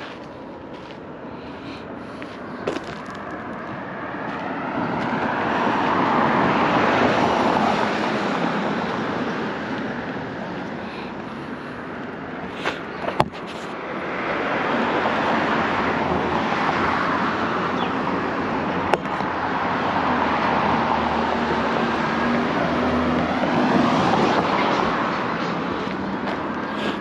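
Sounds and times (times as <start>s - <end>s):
vehicle passing by rumbling: 14.3s - 26.6s.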